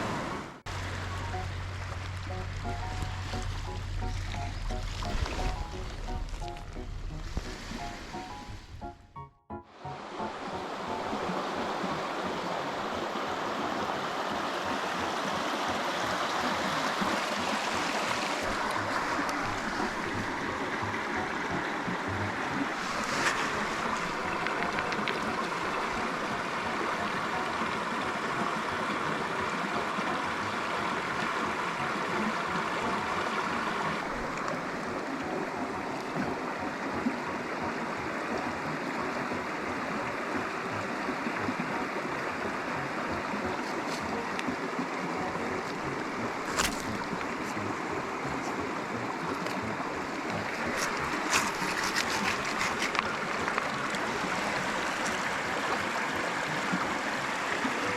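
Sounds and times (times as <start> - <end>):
running water rushing: 0.0 - 9.1, 9.7 - 57.9.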